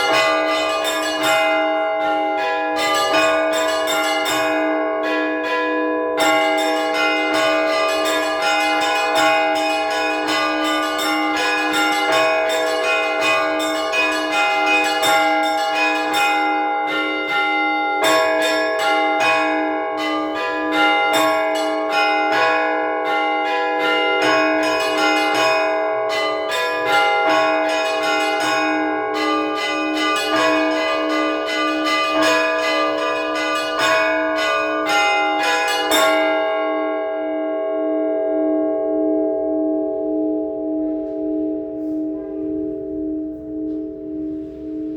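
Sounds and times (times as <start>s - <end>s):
low bell strokes: 39.2s - 44.9s.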